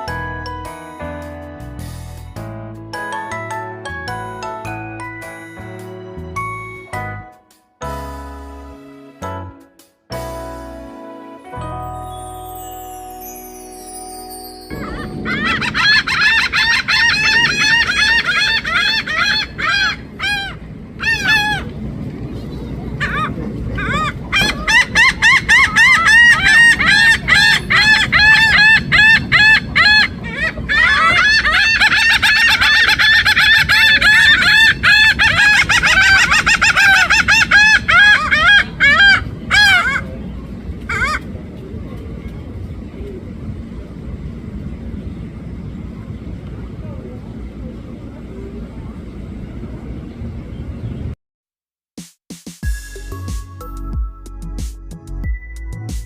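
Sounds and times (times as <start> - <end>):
laughing gulls calling: 14.7 - 41.4
low background rumble: 14.7 - 51.2.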